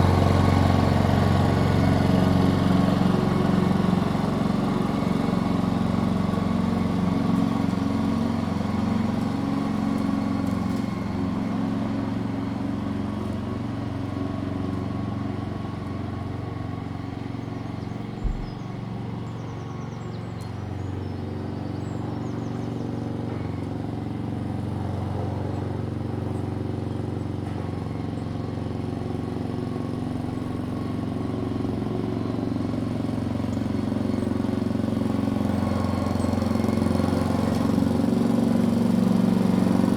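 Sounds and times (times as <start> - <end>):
lawnmower engine running: 0.0 - 39.9
low thump: 18.2 - 18.8.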